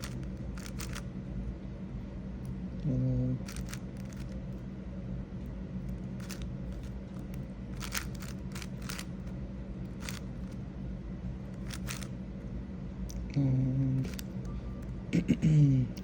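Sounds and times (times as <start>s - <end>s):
plastic puzzle cube clicking: 0.0s - 1.0s, 3.5s - 4.4s, 7.8s - 9.1s, 10.0s - 10.2s, 11.6s - 12.1s
steady low hum: 0.0s - 16.0s.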